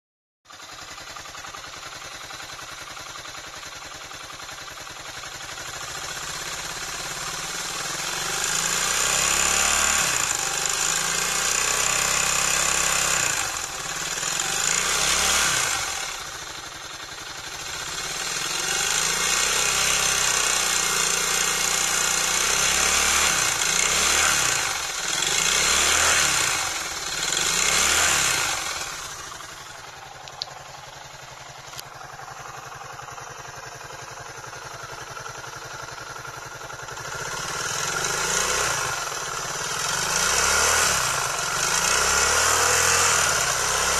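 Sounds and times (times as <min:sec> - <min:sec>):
outboard engine revving: 0:08.0 - 0:16.2, 0:17.9 - 0:29.4, 0:37.1 - 0:43.9.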